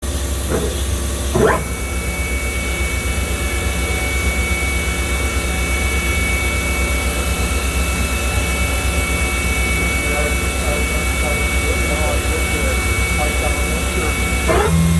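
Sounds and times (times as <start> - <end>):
machine hum: 0.0 - 6.5, 8.7 - 14.9
high machine whine: 0.0 - 14.9.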